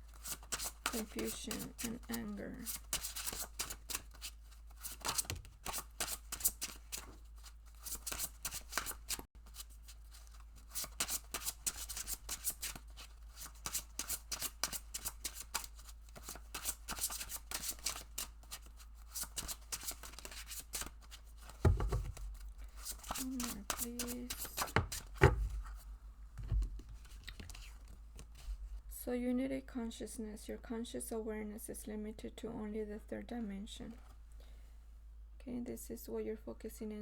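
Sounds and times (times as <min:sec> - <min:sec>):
cards being shuffled: 0:00.1 - 0:25.8, 0:26.4 - 0:28.6
soft thump: 0:21.6 - 0:22.2, 0:26.4 - 0:26.9.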